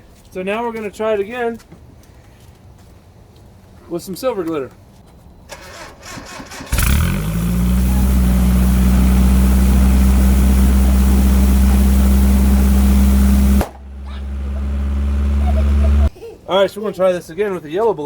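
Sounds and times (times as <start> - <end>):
truck engine cranking: 5.5 - 16.1
loud truck engine idling: 6.7 - 16.1
low engine hum: 6.7 - 16.1.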